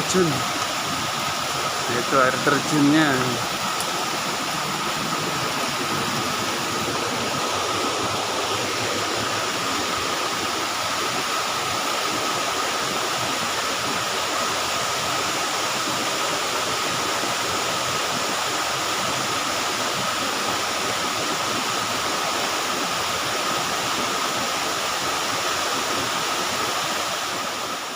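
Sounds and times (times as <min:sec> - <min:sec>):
thin steady tone: 0:00.0 - 0:11.4
waterfall rushing: 0:00.0 - 0:27.9.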